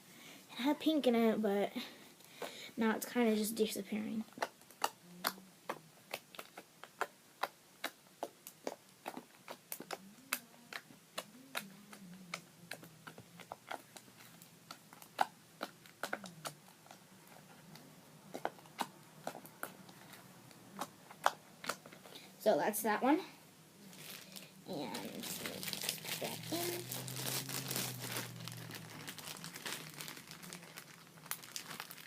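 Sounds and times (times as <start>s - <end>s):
slime clicking and popping: 4.3s - 17.0s, 20.8s - 22.0s.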